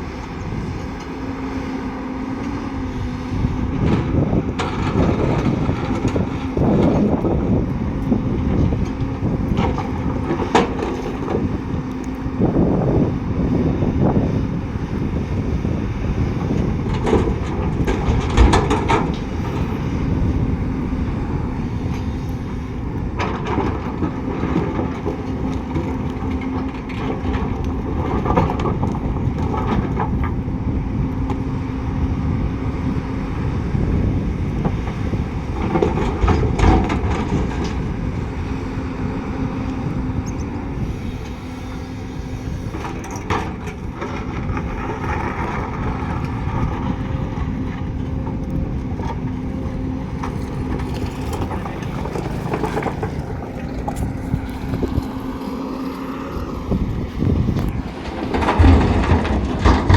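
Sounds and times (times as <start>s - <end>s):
heavy diesel machinery rumbling: 0.0s - 59.9s.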